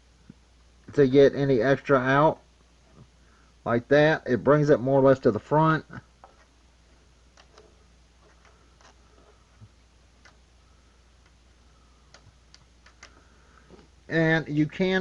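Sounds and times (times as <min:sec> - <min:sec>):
faint clicks and light taps: 0:07.3 - 0:10.5, 0:11.2 - 0:11.4, 0:12.0 - 0:13.9.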